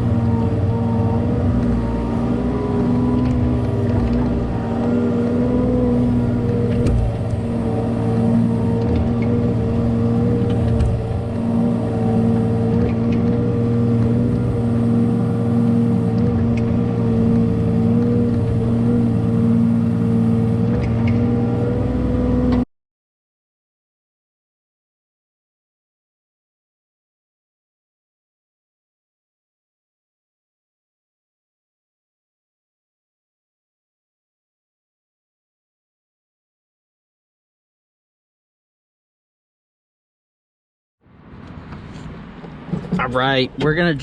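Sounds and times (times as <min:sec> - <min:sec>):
diesel engine running: 0:00.0 - 0:22.6, 0:41.1 - 0:44.0.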